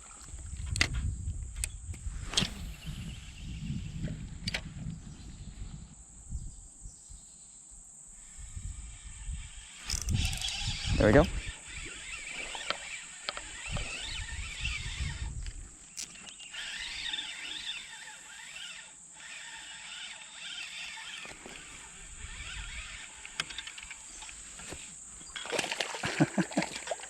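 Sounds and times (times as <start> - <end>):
sharp clicks: 9.8 - 11.3
water moving around wader: 15.8 - 27.0.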